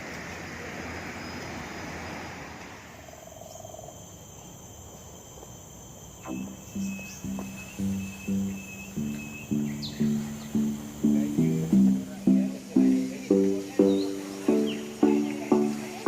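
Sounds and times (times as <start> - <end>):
high-pitched insect drone: 2.9 - 16.0
plucked acoustic guitar music: 6.3 - 16.0.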